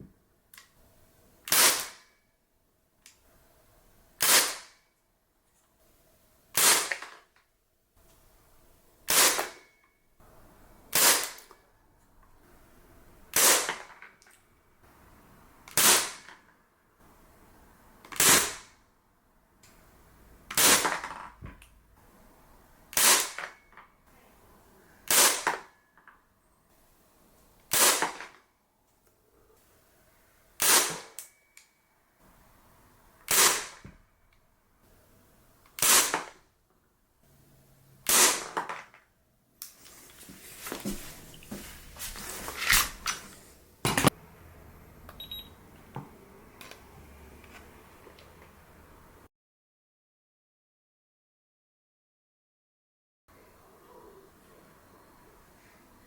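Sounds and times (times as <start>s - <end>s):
airsoft pistol shots: 1.5s - 2.0s, 4.2s - 4.7s, 6.6s - 7.1s, 9.1s - 9.7s, 10.9s - 11.5s, 13.3s - 13.9s, 15.7s - 16.3s, 18.2s - 18.7s, 20.5s - 21.0s, 22.9s - 23.6s, 25.1s - 25.6s, 27.7s - 28.3s, 30.6s - 31.2s, 33.3s - 33.8s, 35.8s - 36.3s, 38.1s - 38.6s.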